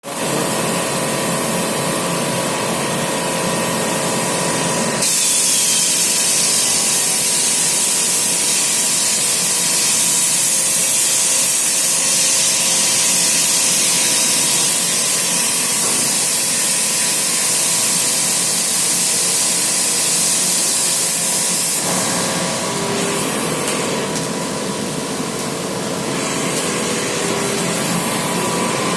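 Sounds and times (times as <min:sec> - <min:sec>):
plasma arc hissing: 0:00.1 - 0:28.9
machine hum: 0:21.8 - 0:28.9.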